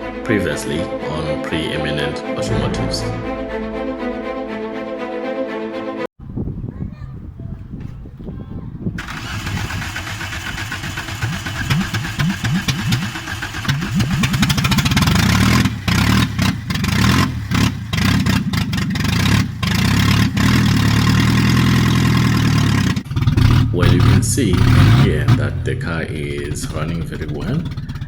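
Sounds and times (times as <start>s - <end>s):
car engine revving: 9.0s - 28.0s.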